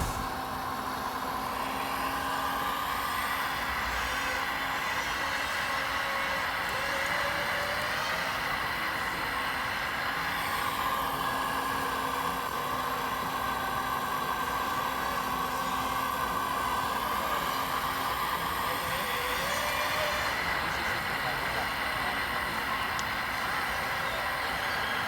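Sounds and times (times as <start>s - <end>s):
constant background hum: 0.0s - 0.4s
model truck motor whine: 0.0s - 0.4s, 1.3s - 25.0s.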